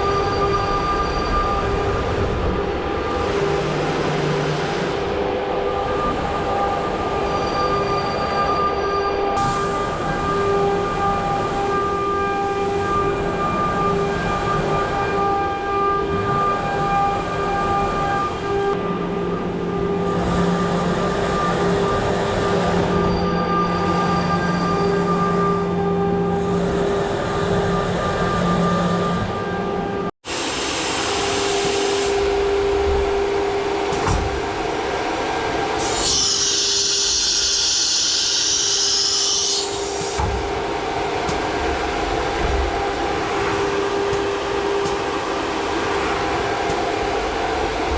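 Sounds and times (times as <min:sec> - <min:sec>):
machining noise: 0:00.0 - 0:47.9
milling machine spindle whine: 0:00.0 - 0:47.9.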